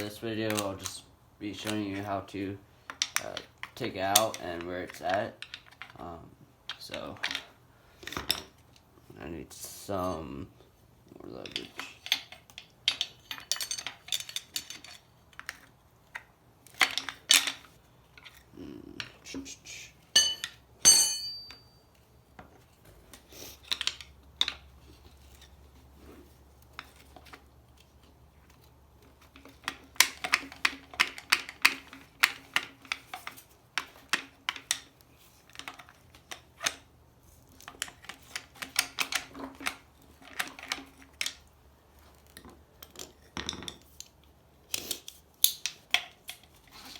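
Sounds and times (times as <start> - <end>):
ringing metal clank: 20.2 - 21.9.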